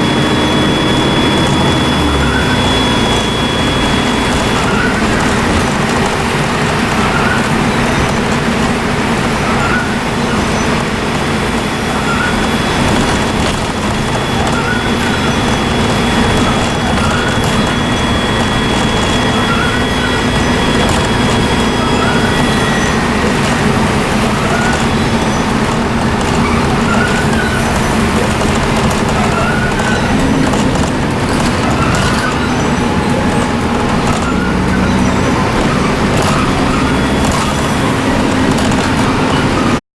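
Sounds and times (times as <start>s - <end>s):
high turbo whistle: 0.0s - 7.5s, 11.7s - 39.8s
bus engine running: 0.0s - 39.8s.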